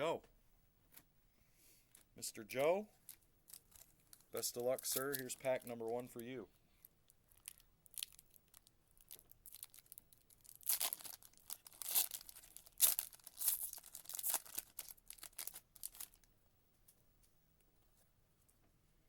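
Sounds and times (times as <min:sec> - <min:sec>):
foil wrapper tearing and crinkling: 0:03.1 - 0:05.7, 0:07.3 - 0:16.3.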